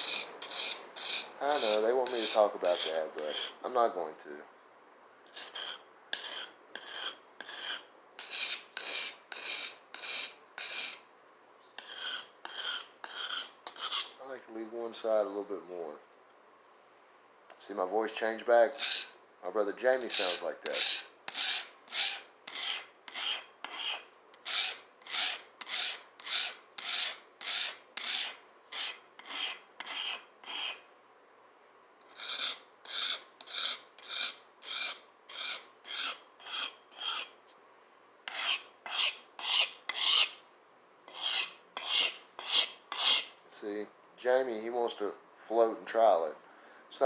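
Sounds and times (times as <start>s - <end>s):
knife rasping on sharpener: 0.0s - 3.6s, 5.3s - 11.0s, 11.8s - 14.2s, 18.7s - 19.2s, 20.0s - 30.8s, 32.0s - 37.4s, 38.3s - 40.4s, 41.1s - 43.3s.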